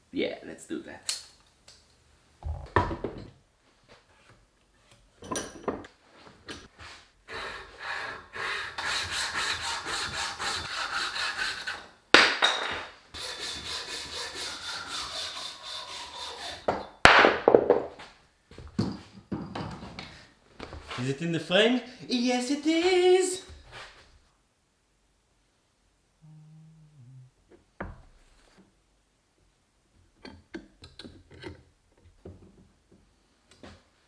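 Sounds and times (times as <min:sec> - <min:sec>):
hand saw cutting wood: 0:07.3 - 0:11.9, 0:13.2 - 0:16.9.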